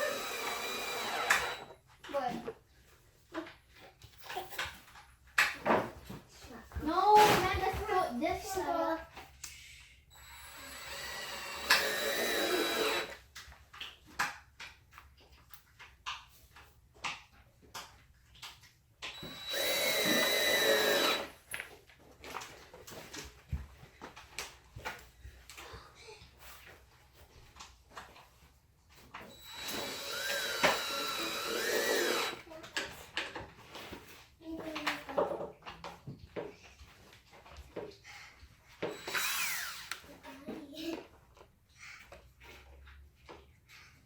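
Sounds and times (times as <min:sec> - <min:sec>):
electric drill motor whining: 0:00.0 - 0:01.8, 0:10.1 - 0:13.2, 0:19.1 - 0:21.4, 0:29.2 - 0:32.4, 0:38.8 - 0:40.1.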